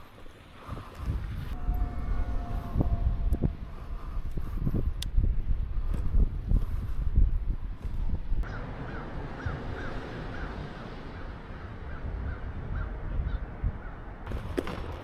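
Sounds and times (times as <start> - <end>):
steady low rumble: 0.7 - 15.0
bird calling: 8.4 - 14.1.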